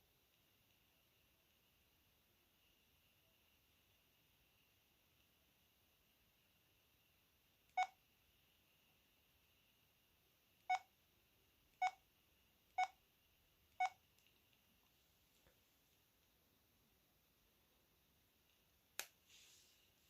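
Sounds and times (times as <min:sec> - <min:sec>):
phone keypad beeps: 0:10.7 - 0:10.9, 0:12.8 - 0:13.0, 0:13.8 - 0:14.0.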